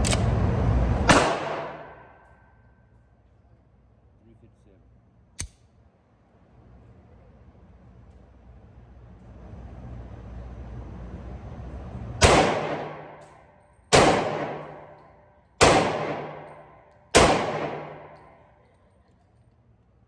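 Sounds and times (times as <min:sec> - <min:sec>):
low background rumble: 0:00.0 - 0:20.0
pistol shots with echo: 0:01.1 - 0:02.2, 0:12.2 - 0:13.3, 0:13.9 - 0:15.0, 0:15.6 - 0:18.5.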